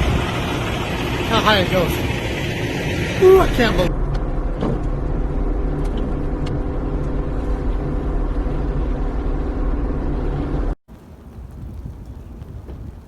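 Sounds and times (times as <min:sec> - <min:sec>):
vehicle engine running: 0:00.0 - 0:13.0.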